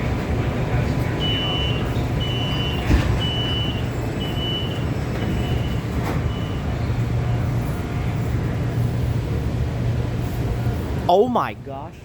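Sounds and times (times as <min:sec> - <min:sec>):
low hum of trains and machinery: 0:00.0 - 0:12.0
door-closing warning beeps: 0:01.2 - 0:06.8.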